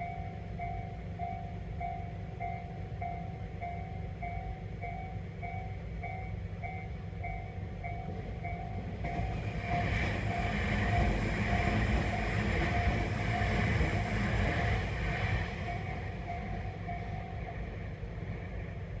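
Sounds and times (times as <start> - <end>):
level crossing warning bell: 0.0 - 18.2
electric train rumbling past: 0.0 - 19.0.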